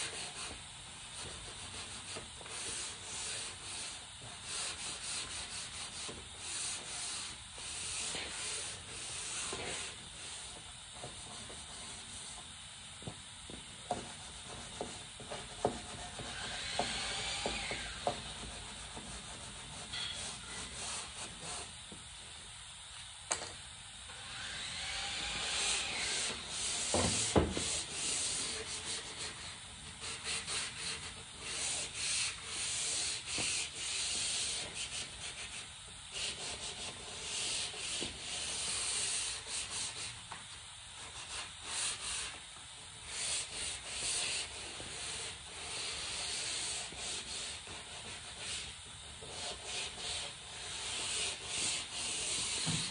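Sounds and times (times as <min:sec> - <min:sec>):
sandpaper rubbing on wood: 0:00.0 - 0:12.4, 0:14.0 - 0:21.8, 0:24.6 - 0:40.2, 0:41.0 - 0:42.4, 0:43.1 - 0:52.9.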